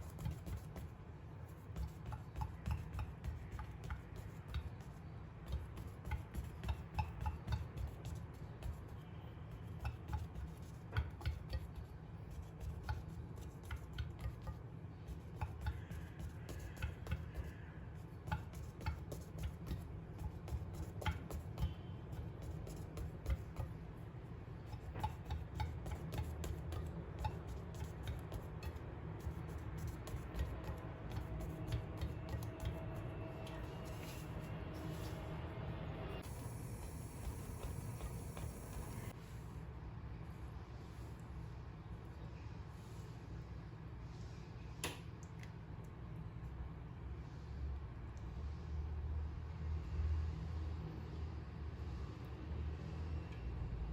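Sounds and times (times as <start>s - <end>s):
low steady hum: 0.0s - 49.6s.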